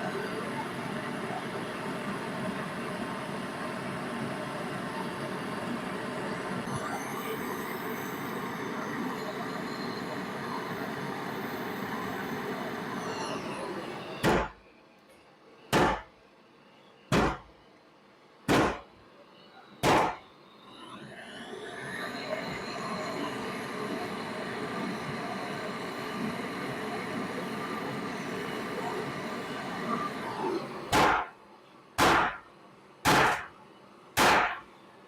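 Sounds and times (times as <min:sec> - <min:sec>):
sharp loud knocks: 0:15.8 - 0:16.1, 0:17.1 - 0:17.4, 0:18.5 - 0:18.8, 0:19.8 - 0:20.2, 0:30.9 - 0:31.3, 0:32.0 - 0:32.4, 0:33.1 - 0:33.5, 0:34.2 - 0:34.6.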